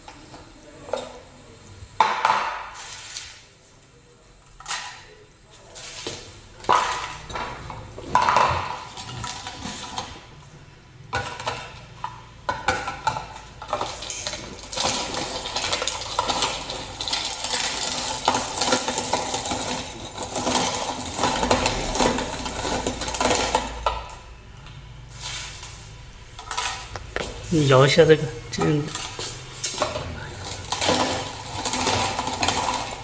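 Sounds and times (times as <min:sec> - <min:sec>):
meat grinder parts clattering: 0:11.1 - 0:24.2, 0:28.6 - 0:33.0.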